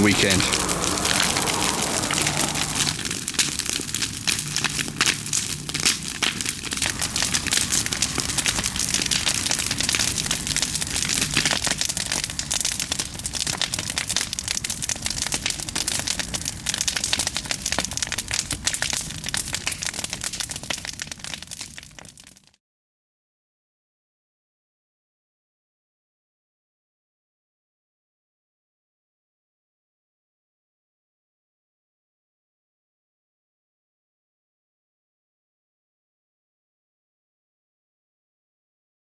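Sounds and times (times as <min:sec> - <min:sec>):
rush of flame: 0:00.0 - 0:22.4
campfire crackling and popping: 0:00.0 - 0:22.6.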